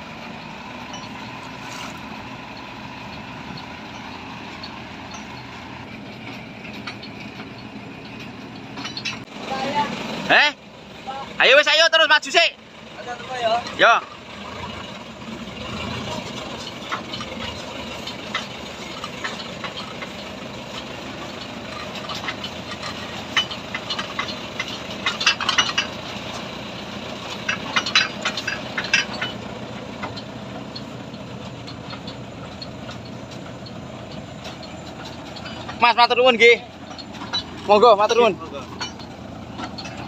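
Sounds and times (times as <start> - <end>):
truck engine running: 0.0 - 40.0
sharp rattling clicks: 0.8 - 10.6, 11.4 - 40.0.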